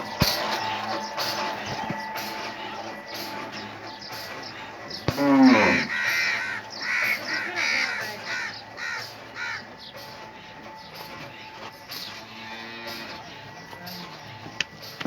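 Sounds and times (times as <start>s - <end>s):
crow cawing: 4.4s - 10.4s.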